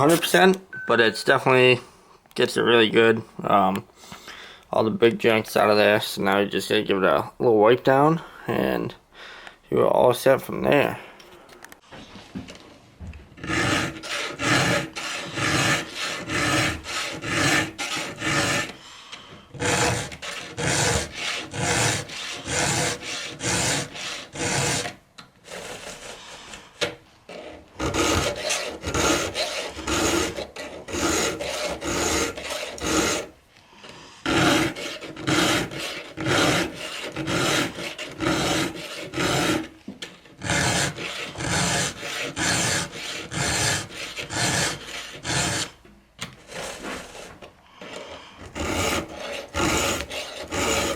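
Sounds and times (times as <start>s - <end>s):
file rasping on chainsaw chain: 13.4s - 18.8s, 19.6s - 24.9s, 27.3s - 33.3s, 34.2s - 39.7s, 40.4s - 45.8s, 46.5s - 50.9s.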